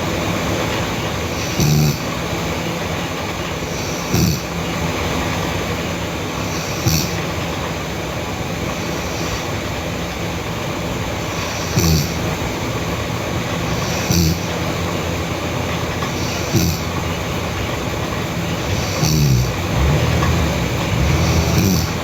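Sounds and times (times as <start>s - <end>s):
loud rumbling background noise: 0.0s - 22.0s
girl snoring in short snorts: 1.4s - 2.0s, 3.8s - 4.4s, 6.6s - 7.2s, 11.4s - 12.2s, 13.8s - 14.4s, 16.2s - 16.9s, 18.7s - 22.0s.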